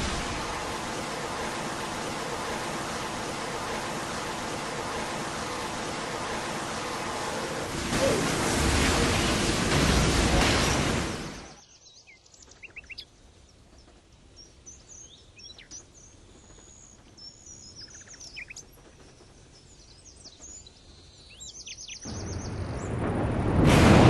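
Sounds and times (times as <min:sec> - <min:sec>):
loud noise: 0:00.0 - 0:11.6, 0:22.1 - 0:24.0
small birds chirping: 0:11.3 - 0:23.0.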